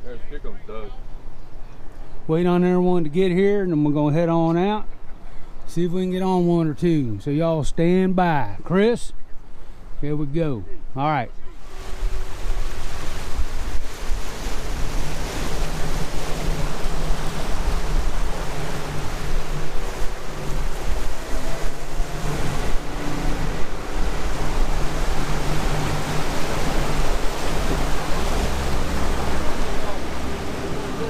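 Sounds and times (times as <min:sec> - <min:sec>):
water rushing past hull: 0:00.0 - 0:31.0
boat motor droning: 0:09.2 - 0:31.0
wind rushing over microphone: 0:09.2 - 0:31.0.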